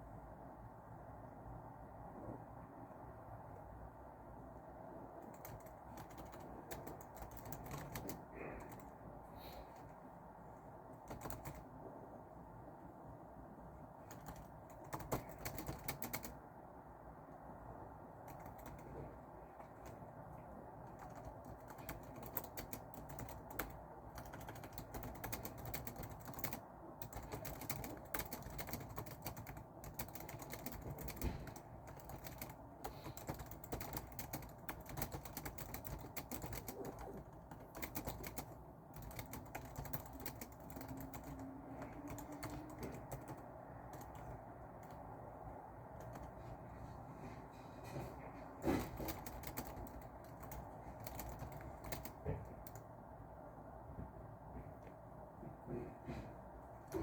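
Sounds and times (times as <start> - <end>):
steady background noise: 0.0 - 57.0
computer keyboard typing: 5.2 - 10.0, 10.9 - 11.8, 14.0 - 16.4, 18.1 - 46.6, 48.6 - 52.9, 56.7 - 57.0.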